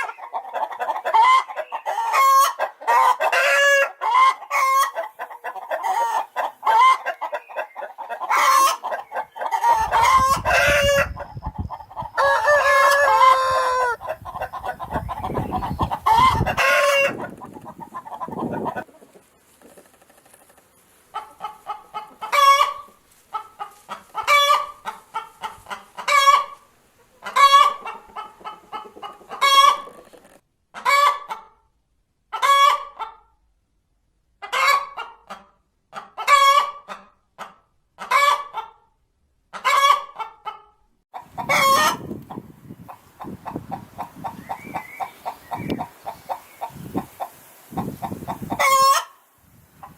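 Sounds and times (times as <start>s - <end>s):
chicken calling: 0.0s - 19.3s, 21.1s - 30.2s, 41.1s - 49.2s
chickens clucking and cackling: 0.0s - 33.4s, 34.3s - 49.9s.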